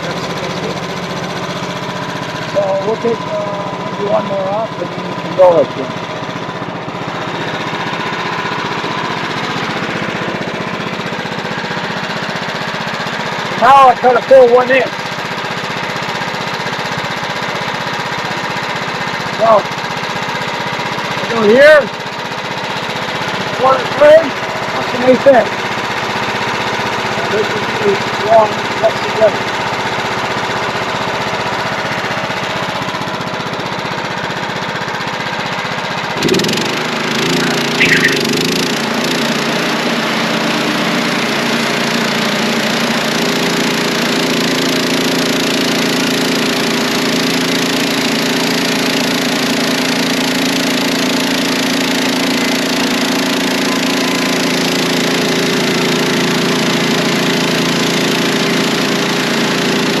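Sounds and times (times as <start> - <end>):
sawmill engine running: 0.0 - 60.0
brief squeal: 37.8 - 38.4.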